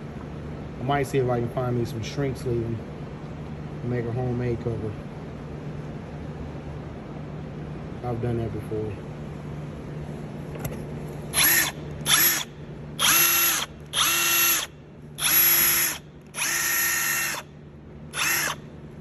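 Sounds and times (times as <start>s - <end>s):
impact wrench motor whine: 10.6s - 17.5s, 18.1s - 18.7s.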